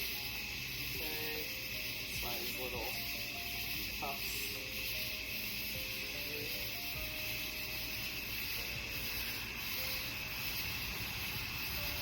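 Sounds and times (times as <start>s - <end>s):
constant hiss: 0.0s - 12.0s.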